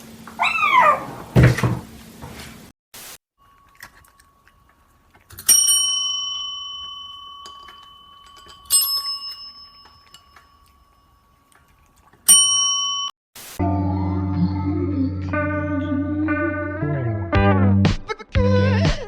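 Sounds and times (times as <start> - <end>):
small metal bell ringing: 5.4 - 11.5, 12.3 - 13.1.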